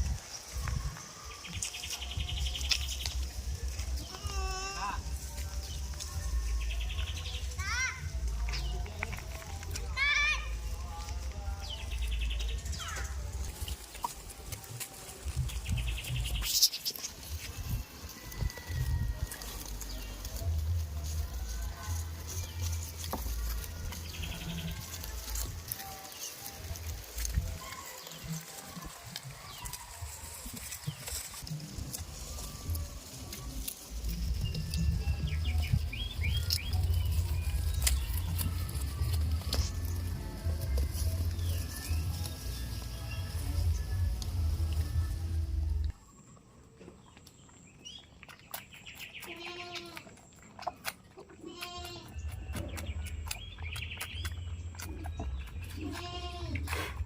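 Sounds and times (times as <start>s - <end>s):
small birds chirping: 0.0s - 18.8s, 19.4s - 57.0s
low rumble: 31.4s - 46.0s.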